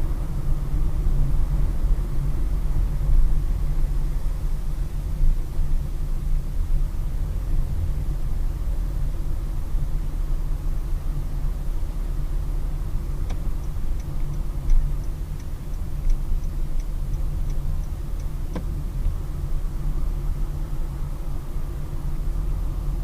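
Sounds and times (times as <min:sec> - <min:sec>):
car engine and road rumble: 0:00.0 - 0:23.0
turn signal ticking: 0:12.9 - 0:19.3.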